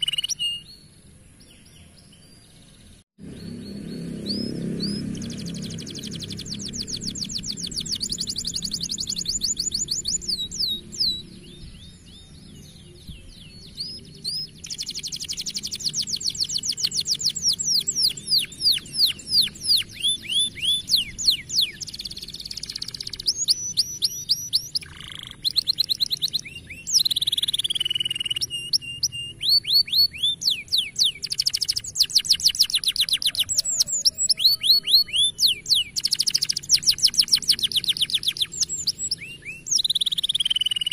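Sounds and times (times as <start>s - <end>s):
canary singing trills: 0.0s - 40.9s.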